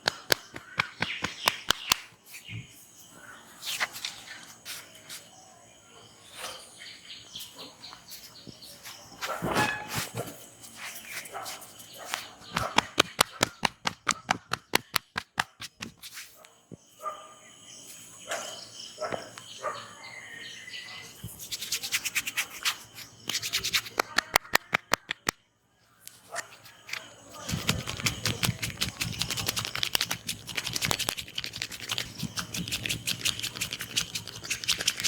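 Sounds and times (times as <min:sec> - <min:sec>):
rapid hand tapping: 0:00.0 - 0:02.0, 0:12.5 - 0:16.0, 0:27.5 - 0:35.0
soft hand rubbing: 0:21.2 - 0:24.3, 0:26.4 - 0:35.0.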